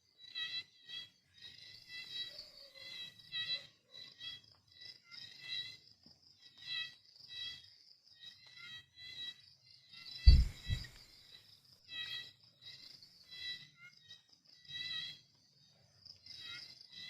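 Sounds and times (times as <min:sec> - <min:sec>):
loud low thump: 0:10.3 - 0:10.9.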